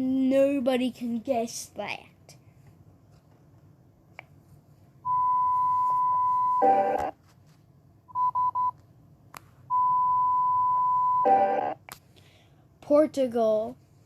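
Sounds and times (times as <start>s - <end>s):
emergency alert beeps: 5.1s - 7.1s, 8.1s - 8.7s, 9.7s - 11.8s.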